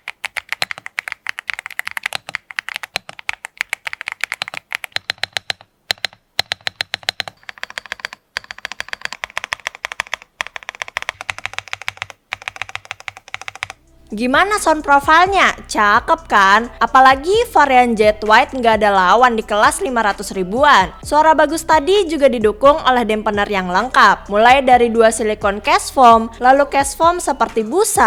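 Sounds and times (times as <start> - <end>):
mechanical keyboard key clacks: 0.0 - 13.8.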